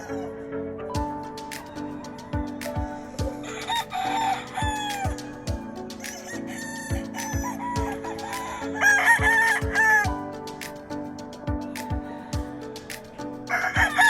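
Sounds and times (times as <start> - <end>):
background music with steady beat: 0.0 - 14.0
rooster crowing: 3.4 - 5.2.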